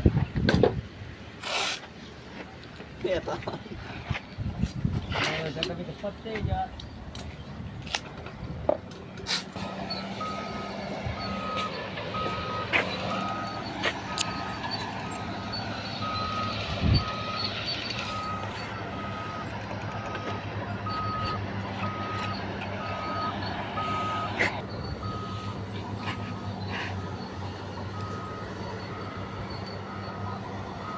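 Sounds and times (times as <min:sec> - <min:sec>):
low engine hum: 0:05.8 - 0:30.9
vehicle reversing alarm beeps: 0:09.6 - 0:30.9.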